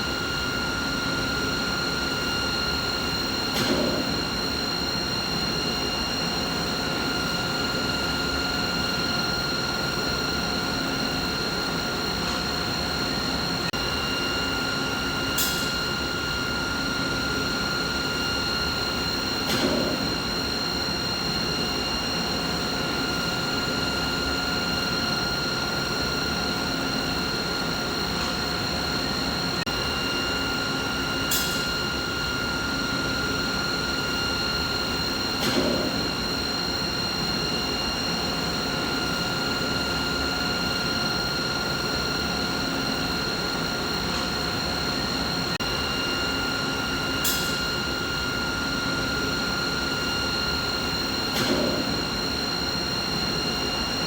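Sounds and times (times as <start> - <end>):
machinery hum with whining tones: 0.0 - 54.0
brief click or knock: 51.4 - 51.9.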